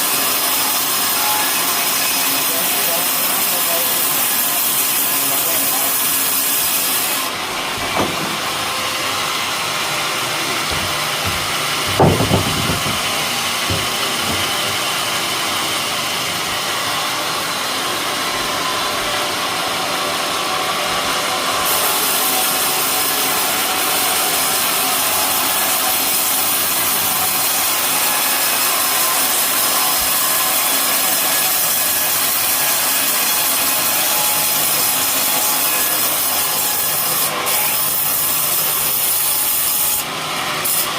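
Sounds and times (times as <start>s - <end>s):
sawmill sawing through wood: 0.0s - 40.9s
short knock: 7.8s - 8.4s, 10.6s - 14.8s.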